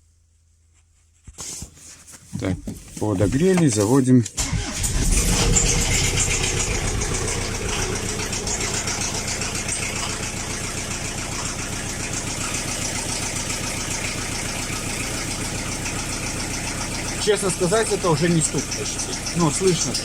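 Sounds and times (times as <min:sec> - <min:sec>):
diesel engine idling: 0:04.4 - 0:20.0.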